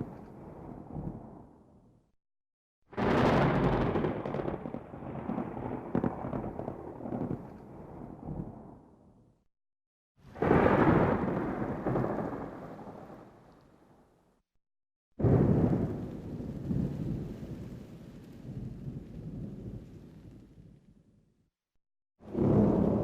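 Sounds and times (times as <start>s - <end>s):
thunder claps rumbling: 0.0s - 1.6s, 2.9s - 8.9s, 10.3s - 13.5s, 15.2s - 21.1s, 22.2s - 23.0s.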